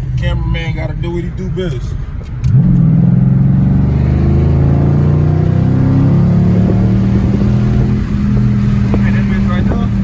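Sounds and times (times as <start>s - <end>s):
car engine revving high: 2.4s - 10.0s.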